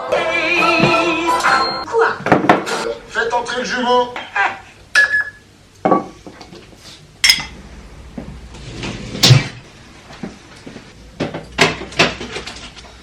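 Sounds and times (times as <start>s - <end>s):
household knocks and clatters: 11.2s - 12.9s.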